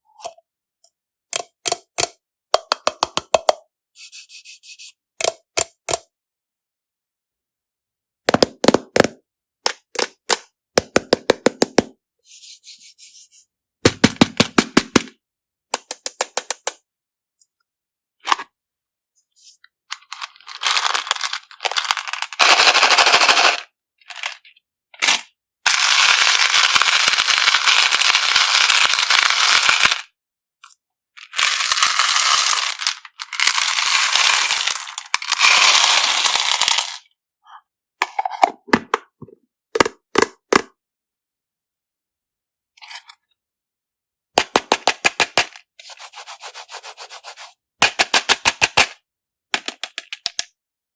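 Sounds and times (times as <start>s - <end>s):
hard candies clattering: 19.9s - 30.0s, 31.2s - 37.0s
candy pouring rattle: 20.0s - 24.4s, 25.0s - 30.1s, 31.2s - 37.0s.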